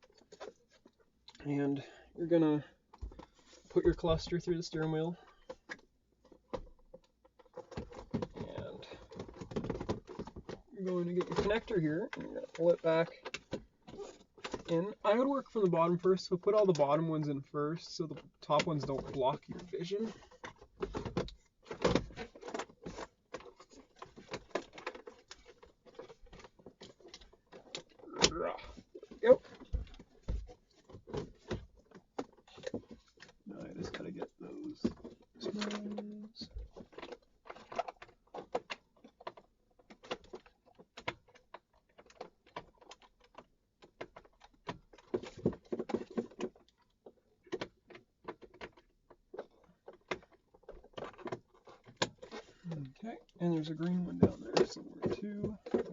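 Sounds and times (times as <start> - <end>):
plastic clicks and rattles: 18.1 - 55.9.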